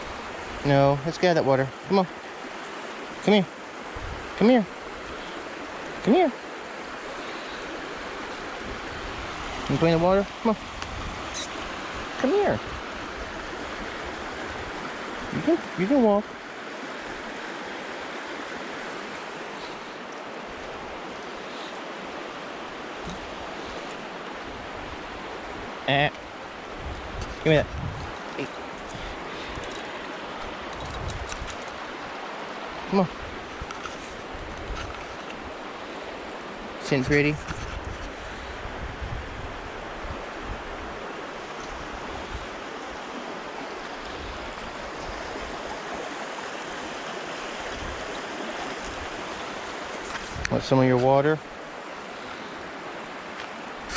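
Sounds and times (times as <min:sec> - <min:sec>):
flowing water rushing: 0:00.0 - 0:53.9
wind rumble on microphone: 0:03.9 - 0:04.4, 0:08.0 - 0:15.4, 0:26.6 - 0:28.3, 0:30.5 - 0:31.6, 0:33.1 - 0:35.7, 0:37.4 - 0:43.2, 0:43.8 - 0:50.7.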